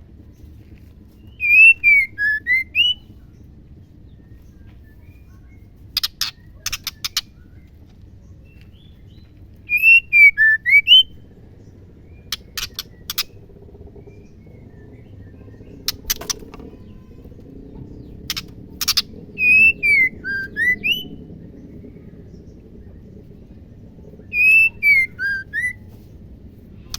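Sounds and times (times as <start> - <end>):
bird whistled notes: 1.3 - 3.0, 9.7 - 11.1, 18.8 - 21.2, 24.2 - 25.9.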